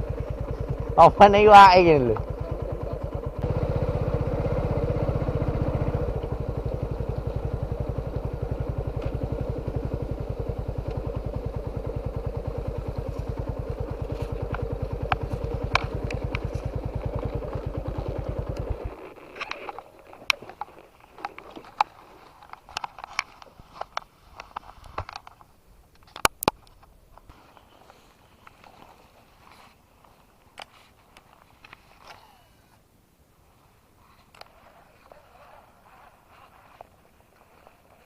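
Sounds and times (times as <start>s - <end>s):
small engine running: 0.0s - 20.4s
sharp clicks and ticks: 14.4s - 23.3s.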